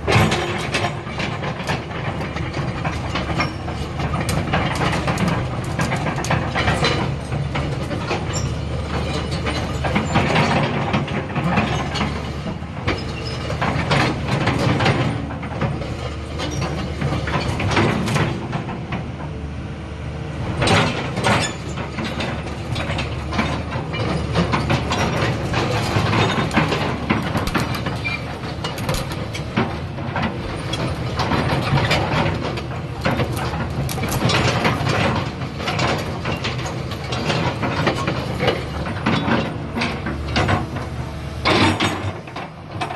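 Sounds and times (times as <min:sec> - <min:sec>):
metallic clanks and rattles: 0:00.0 - 0:12.2, 0:20.6 - 0:42.9
excavator diesel engine drone: 0:00.0 - 0:42.9.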